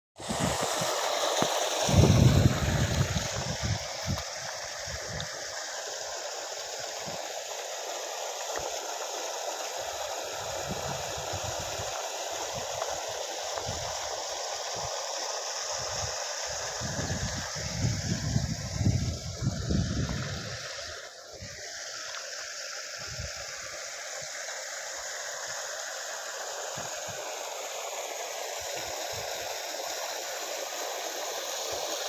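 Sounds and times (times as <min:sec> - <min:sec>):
water spraying from hoses: 0:00.2 - 0:32.0
wind buffeting microphone: 0:01.9 - 0:05.3, 0:16.8 - 0:20.7.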